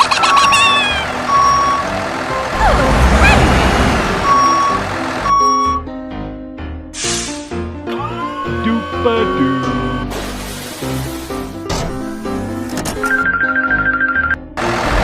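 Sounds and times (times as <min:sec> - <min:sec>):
reversing alarm beeps: 0:00.2 - 0:01.8, 0:04.2 - 0:05.8
low rumble: 0:02.2 - 0:05.7.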